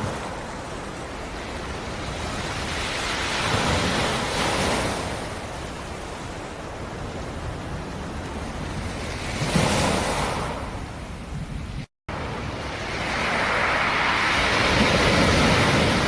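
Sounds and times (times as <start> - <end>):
wave breaking: 12.1 - 16.0
hiss of surf: 12.2 - 16.0.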